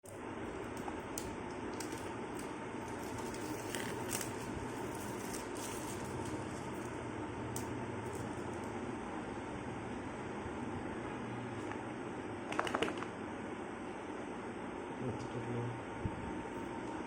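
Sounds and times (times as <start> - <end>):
packaging crackling: 1.2 - 6.9.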